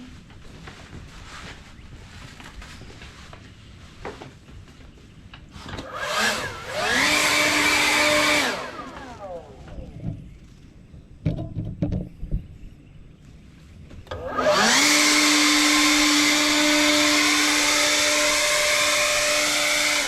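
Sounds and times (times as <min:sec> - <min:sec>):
electric motor whine: 0:05.6 - 0:10.1, 0:14.1 - 0:20.0.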